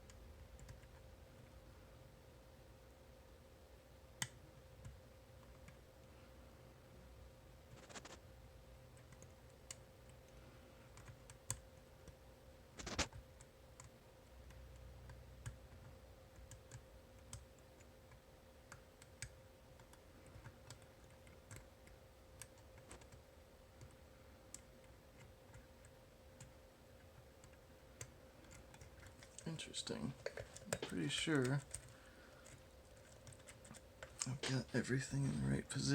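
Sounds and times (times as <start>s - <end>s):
faint steady hum: 0.0s - 35.9s.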